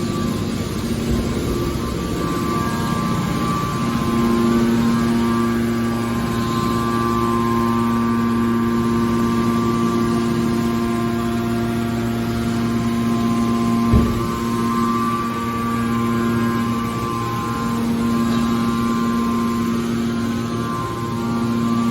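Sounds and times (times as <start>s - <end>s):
electric motor and pump humming: 0.0s - 21.9s
machine clunk: 13.8s - 14.6s.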